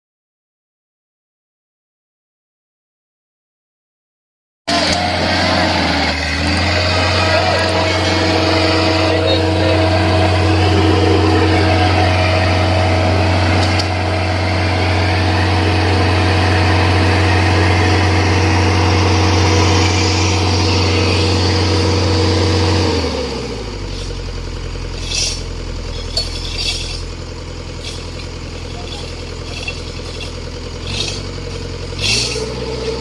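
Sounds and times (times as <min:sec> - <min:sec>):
diesel engine running: 0:04.7 - 0:33.0.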